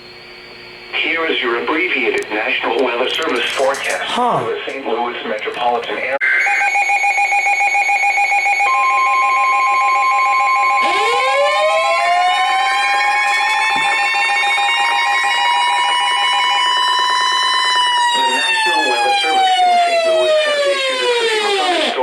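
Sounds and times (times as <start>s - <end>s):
siren winding up: 6.2s - 22.0s.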